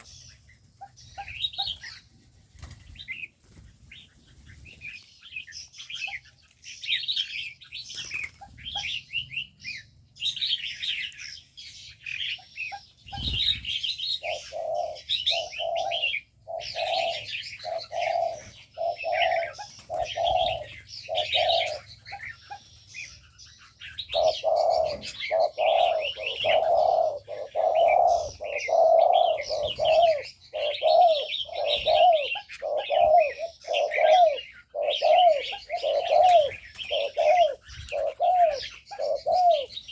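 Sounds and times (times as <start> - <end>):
small birds chirping: 0.0 - 39.9
doves cooing: 12.1 - 39.9.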